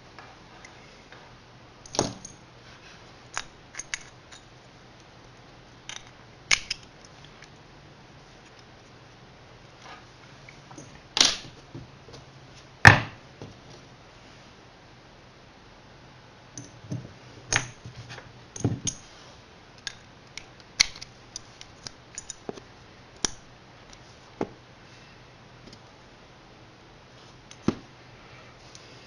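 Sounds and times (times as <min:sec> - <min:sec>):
metal parts clicking and knocking: 0:03.3 - 0:04.5, 0:05.9 - 0:07.5, 0:20.8 - 0:22.6.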